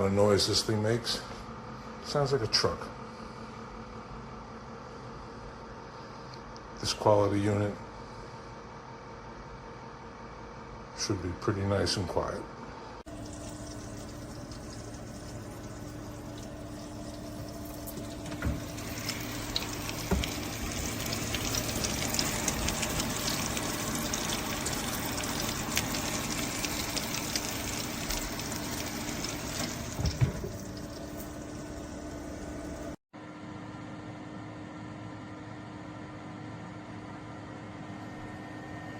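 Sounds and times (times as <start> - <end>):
air fryer fan hum: 12.6 - 38.9.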